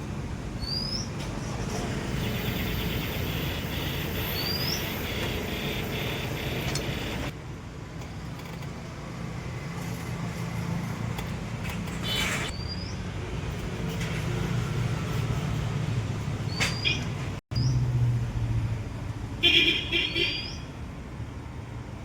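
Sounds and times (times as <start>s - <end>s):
rising bird chirps: 2.2s - 7.3s
vehicle engine running: 2.2s - 7.3s.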